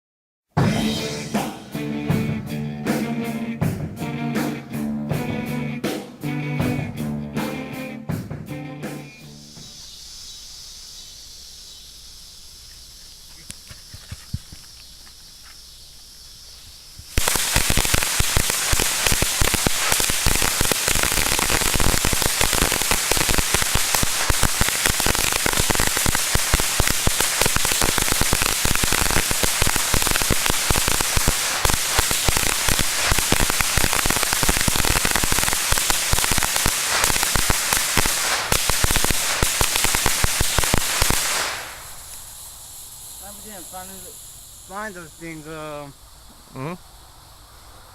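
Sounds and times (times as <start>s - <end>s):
firecrackers popping: 12.6s - 45.8s.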